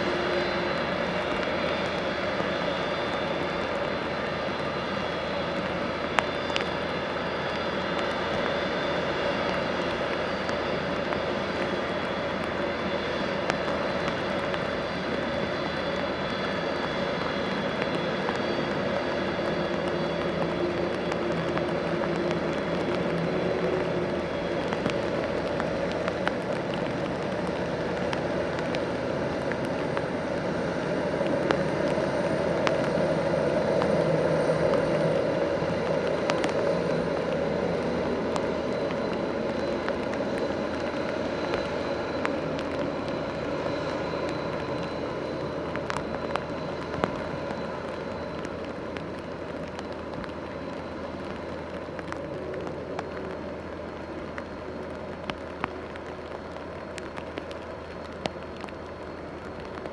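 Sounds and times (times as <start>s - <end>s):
jet engines rumbling with whine: 0.0s - 59.9s
rain pattering: 0.0s - 59.9s.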